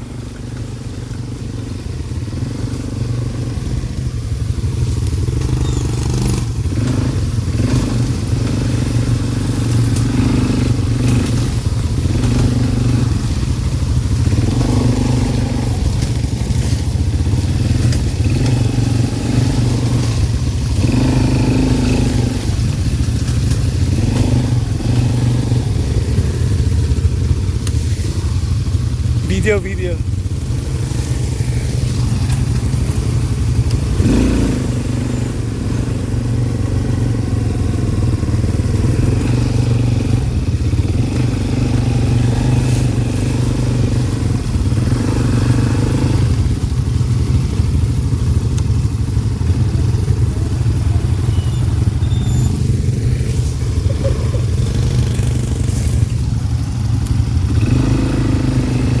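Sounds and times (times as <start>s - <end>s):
atv engine running: 0.0s - 59.0s.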